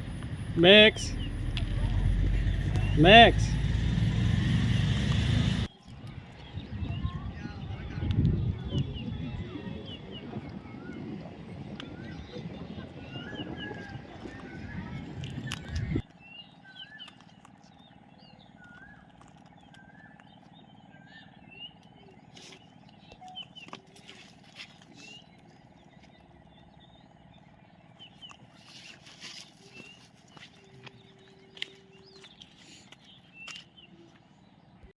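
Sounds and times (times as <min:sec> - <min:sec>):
birds chirping faintly: 0:00.0 - 0:34.9
low hum: 0:00.0 - 0:34.9.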